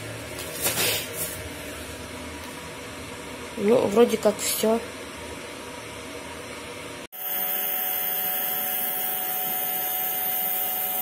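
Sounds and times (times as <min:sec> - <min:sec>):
nebulizer motor buzzing: 0:07.2 - 0:11.0.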